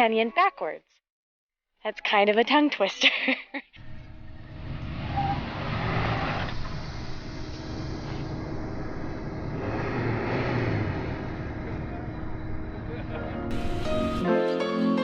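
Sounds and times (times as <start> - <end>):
off-road vehicle engine: 3.8 - 13.5.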